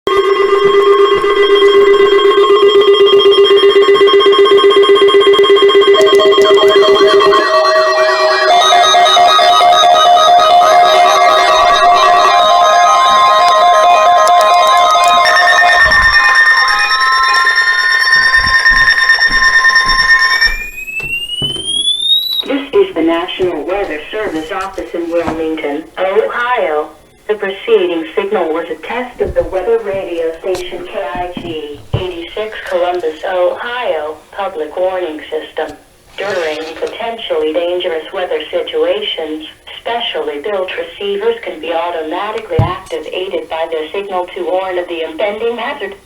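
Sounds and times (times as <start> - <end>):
pulsing electronic alarm tone: 0.1 - 22.7
higher steady tones: 0.1 - 24.9.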